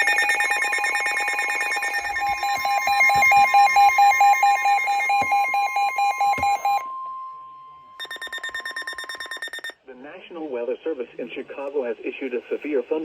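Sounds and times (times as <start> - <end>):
steady warning alarm tone: 0.0 - 9.8
weather radio alarms beeping: 0.0 - 9.8.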